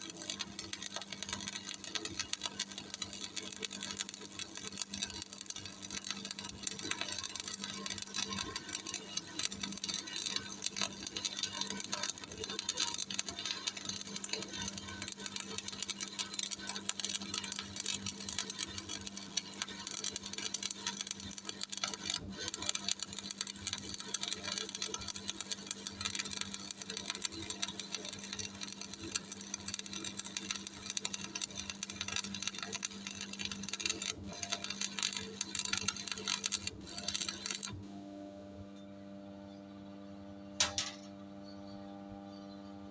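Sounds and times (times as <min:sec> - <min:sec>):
welding arc crackling: 0:00.0 - 0:37.8.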